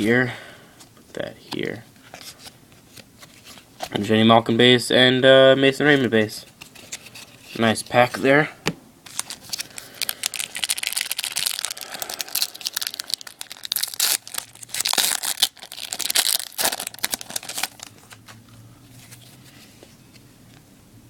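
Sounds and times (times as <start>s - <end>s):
plastic wrapper tearing and crinkling: 9.0s - 18.2s.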